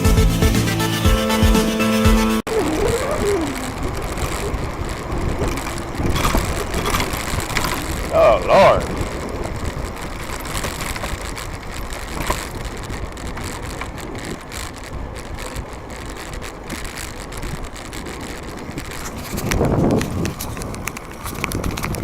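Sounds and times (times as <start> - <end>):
tyre and road noise: 0.0 - 22.0
wind rushing over microphone: 2.5 - 22.0.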